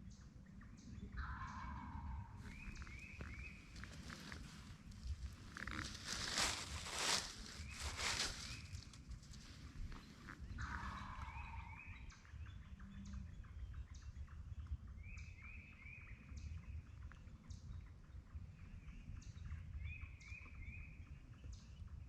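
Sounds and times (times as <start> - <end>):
songbirds chirping: 0.0 - 22.0
faint high bird calls: 0.9 - 13.9.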